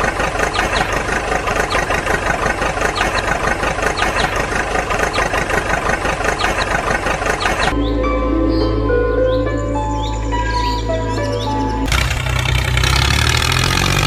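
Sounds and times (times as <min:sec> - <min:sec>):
tractor engine idling: 0:00.0 - 0:08.1, 0:09.5 - 0:14.0.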